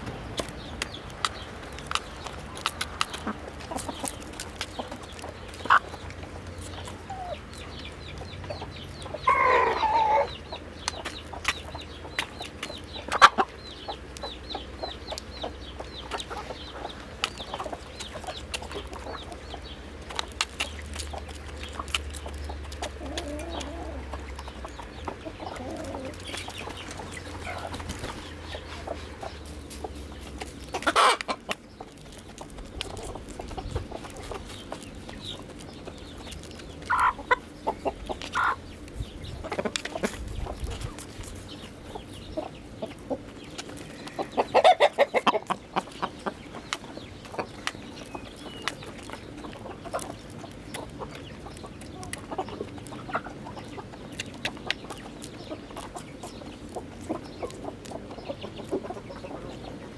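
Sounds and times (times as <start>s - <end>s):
chickens clucking: 0.0s - 59.9s
chicken squawk: 9.1s - 10.4s, 30.8s - 31.5s, 36.9s - 37.4s, 38.3s - 38.6s.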